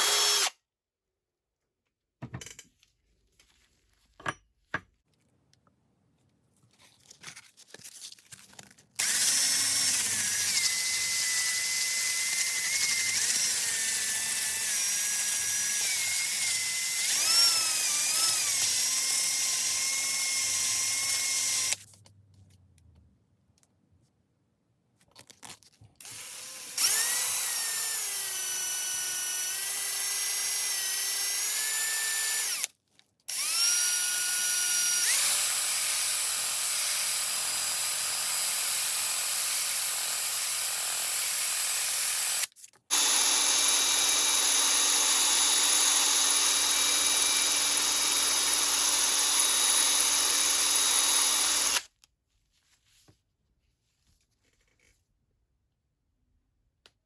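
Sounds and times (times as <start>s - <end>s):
power tool motor whine: 0.0s - 0.5s, 33.3s - 39.3s, 41.6s - 51.8s.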